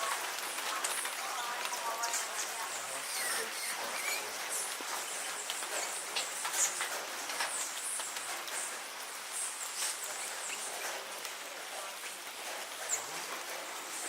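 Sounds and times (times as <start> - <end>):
small birds chirping: 0.0 - 11.0.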